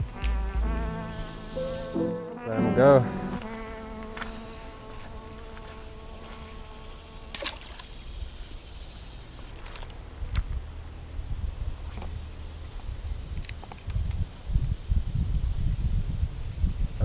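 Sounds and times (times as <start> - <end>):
fly humming: 0.0 - 7.4
insects droning: 0.0 - 9.2.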